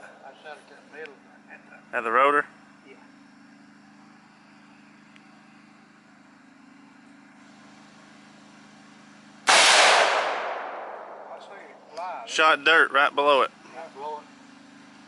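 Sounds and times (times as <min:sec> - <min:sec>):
low hum: 0:06.6 - 0:12.4
rifle shot with echo: 0:09.5 - 0:11.8.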